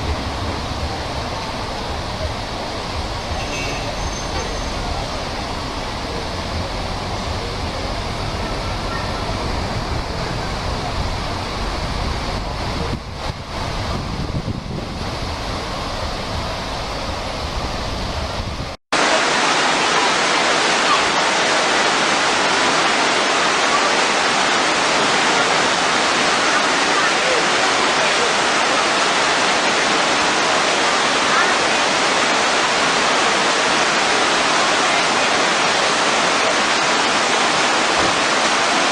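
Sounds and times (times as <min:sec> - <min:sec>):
low rumbling: 0:00.0 - 0:18.8
waterfall rushing: 0:00.0 - 0:38.9.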